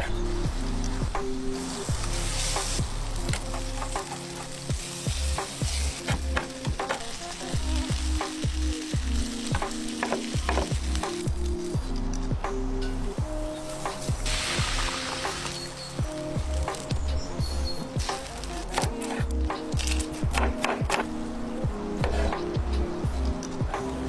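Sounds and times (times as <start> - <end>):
background music with bass line: 0.0 - 24.0
chicken sizzling in a pan: 0.3 - 11.8, 12.9 - 20.3.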